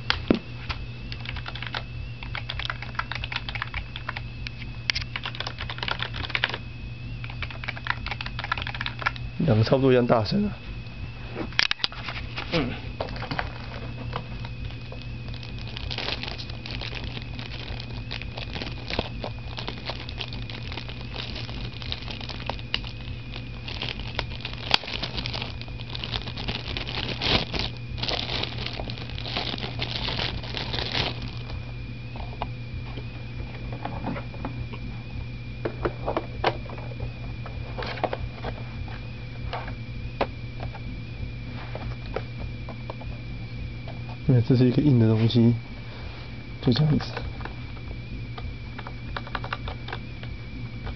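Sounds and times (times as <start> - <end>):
keyboard clicks and clatter: 1.1 - 4.2, 4.9 - 6.6, 7.2 - 9.2, 48.8 - 50.0
plastic packaging crinkling: 11.6 - 31.6.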